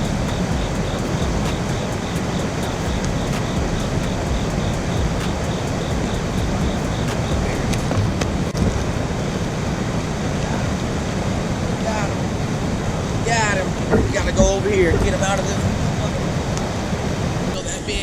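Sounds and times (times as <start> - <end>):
faint regular ticking: 0.0 - 8.6
river water rushing: 0.0 - 14.9.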